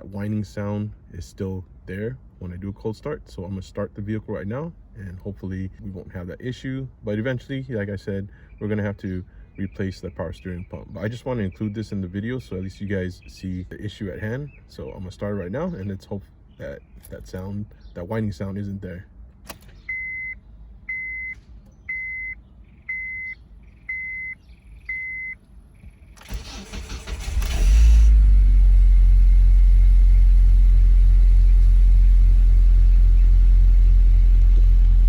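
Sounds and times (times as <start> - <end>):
car warning chime beeping: 19.9 - 25.4
car engine idling: 25.6 - 35.0
starter motor cranking: 26.2 - 28.4.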